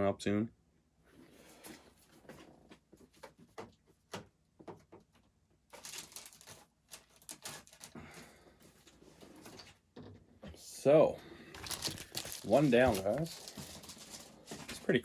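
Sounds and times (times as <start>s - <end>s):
packaging rustling: 5.7s - 9.8s, 11.5s - 15.0s.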